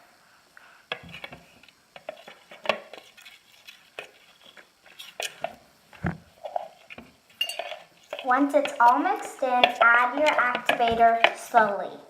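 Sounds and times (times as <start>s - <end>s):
utensil stirring glue in container: 2.0s - 5.6s, 6.4s - 11.8s.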